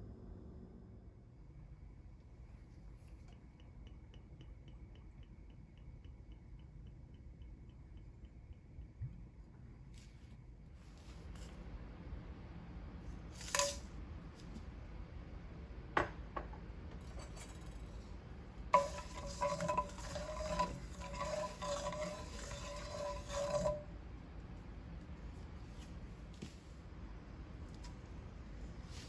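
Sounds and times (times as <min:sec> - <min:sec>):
spoon stirring in ringing pot: 0:13.4 - 0:13.9, 0:18.7 - 0:24.0
metal spoon clinking on pot: 0:18.8 - 0:23.8.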